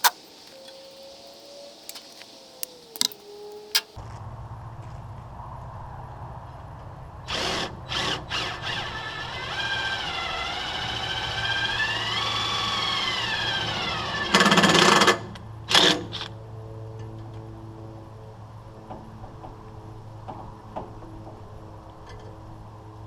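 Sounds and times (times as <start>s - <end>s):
power tool whine: 7.3s - 15.1s.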